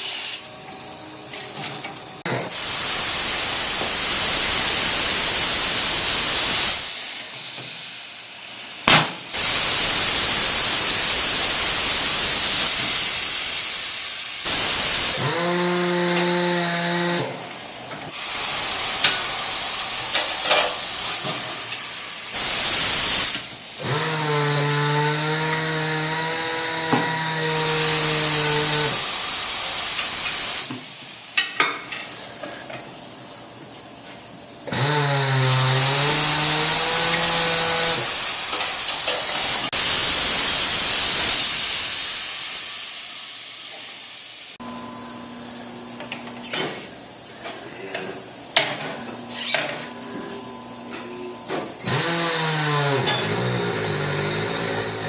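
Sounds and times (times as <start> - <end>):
compressed air hissing: 0.0 - 31.4, 34.8 - 44.6
motor whine: 51.8 - 55.0.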